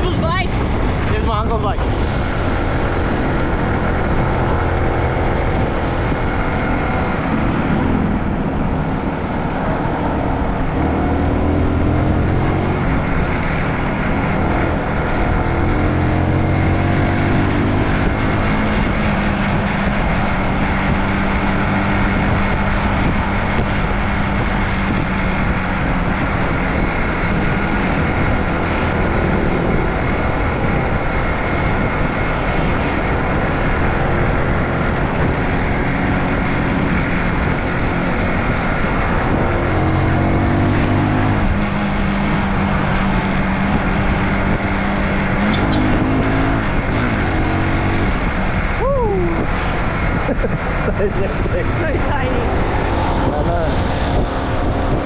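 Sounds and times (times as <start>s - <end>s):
motorcycle engine running: 0.0s - 55.0s
road and wind noise: 0.0s - 55.0s.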